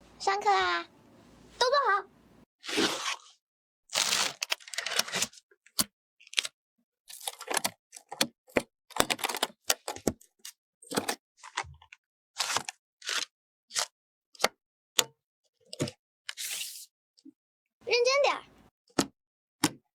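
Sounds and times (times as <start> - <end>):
packaging tearing and crinkling: 3.9 - 5.4.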